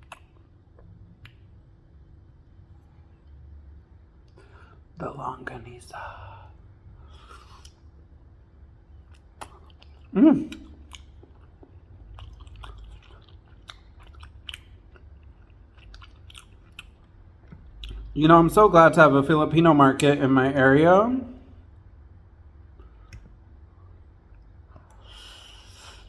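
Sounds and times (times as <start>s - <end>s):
wet mouth clicks: 0.0s - 1.5s, 7.2s - 7.9s, 9.0s - 18.2s, 22.8s - 23.4s
person chewing food: 0.0s - 1.7s, 7.0s - 18.2s, 22.6s - 26.0s.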